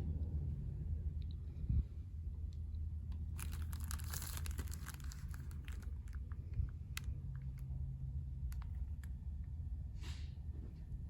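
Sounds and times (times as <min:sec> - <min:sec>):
crinkling rustle: 0:03.3 - 0:07.7.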